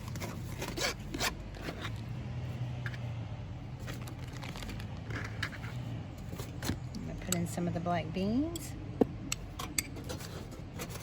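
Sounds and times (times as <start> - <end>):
foil and bags crinkling: 3.8 - 5.2.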